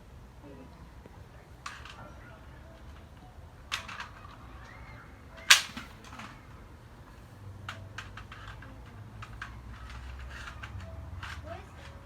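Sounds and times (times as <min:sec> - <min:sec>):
toy gun plastic snap: 0:05.5 - 0:06.1
light plastic clicks: 0:05.5 - 0:06.3.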